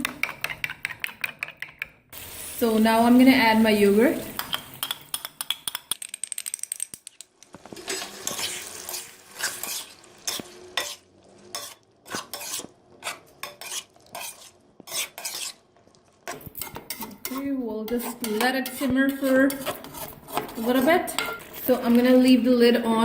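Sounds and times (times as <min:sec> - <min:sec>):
spoon scraping a pan: 0:00.0 - 0:01.9, 0:07.6 - 0:15.6, 0:16.2 - 0:22.3
chicken sizzling in oil: 0:02.2 - 0:04.8, 0:07.6 - 0:12.6.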